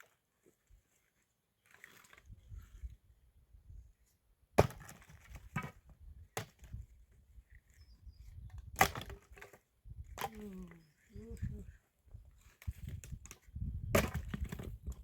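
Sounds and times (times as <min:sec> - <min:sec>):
firewood chopping strikes: 0:04.6 - 0:05.7, 0:08.8 - 0:09.5, 0:13.9 - 0:14.7.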